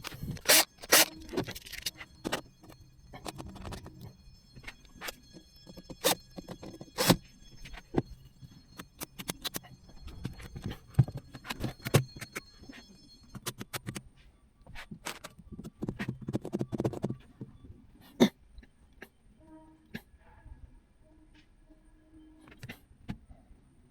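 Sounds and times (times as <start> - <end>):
objects clicking and knocking: 0.0 - 8.2, 14.7 - 17.5
faint high whine: 0.0 - 23.9.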